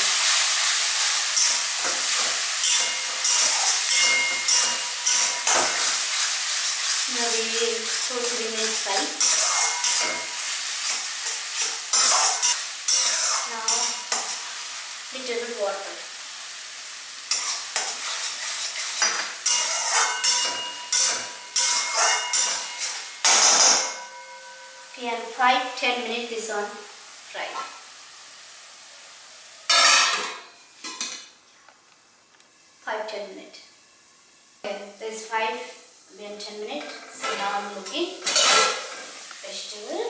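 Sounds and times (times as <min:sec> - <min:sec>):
food sizzling in hot oil: 0:00.0 - 0:31.0, 0:32.5 - 0:40.0
metal spoon scraping a pan: 0:00.1 - 0:14.6, 0:17.3 - 0:24.8, 0:36.8 - 0:39.2
faint ring from the pan: 0:02.6 - 0:05.5, 0:19.4 - 0:25.0.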